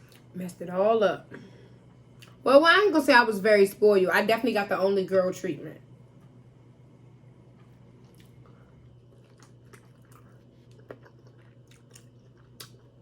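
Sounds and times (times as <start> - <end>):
person chewing food: 2.2 - 2.4, 7.4 - 13.0.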